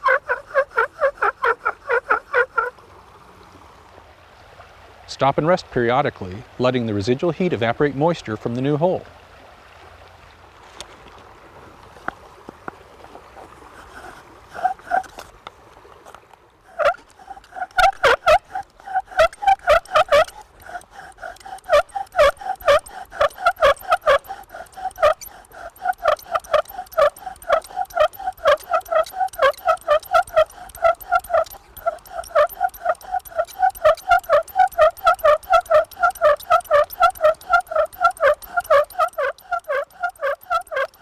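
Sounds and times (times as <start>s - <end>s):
bow-drill spindle squeaking: 0.0s - 2.7s, 13.8s - 15.3s, 16.7s - 41.0s.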